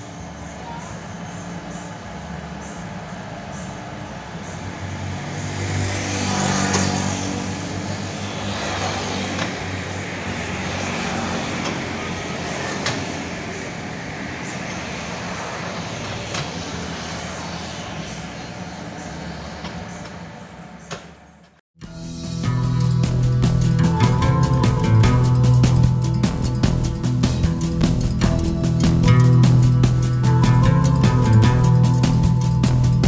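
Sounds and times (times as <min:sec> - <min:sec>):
heavy diesel machinery running: 0:21.8 - 0:33.0.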